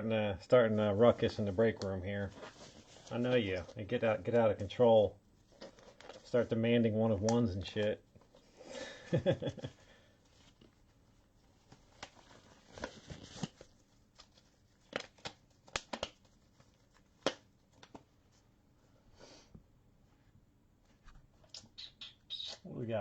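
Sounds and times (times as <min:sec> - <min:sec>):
card boxes and packaging handled: 0:01.0 - 0:04.8, 0:05.4 - 0:08.5, 0:11.4 - 0:18.4.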